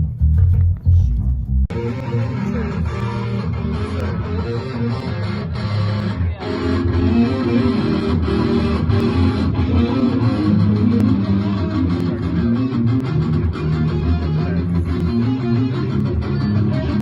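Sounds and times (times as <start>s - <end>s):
bass guitar: 0.0s - 17.0s
electric guitar: 1.4s - 17.0s.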